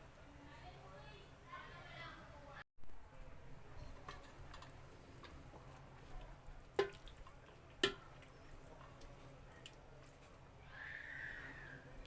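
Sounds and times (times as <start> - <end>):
covered pot simmering: 3.7 - 11.3.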